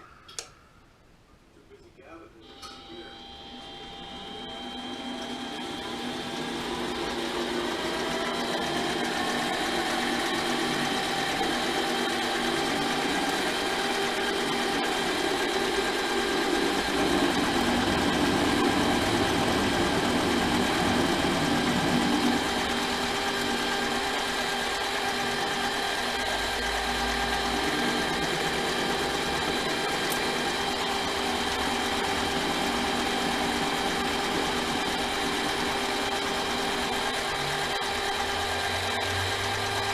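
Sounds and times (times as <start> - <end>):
lathe motor whine: 2.4 - 39.9
lathe tool cutting metal: 2.4 - 39.9.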